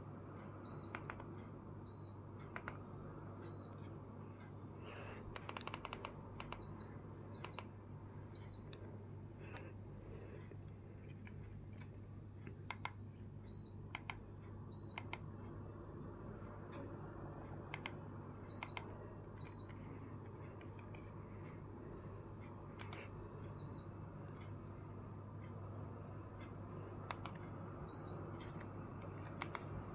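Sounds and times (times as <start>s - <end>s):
air conditioner humming: 0.0s - 29.9s
sharp clicks: 2.4s - 2.8s, 5.3s - 6.8s.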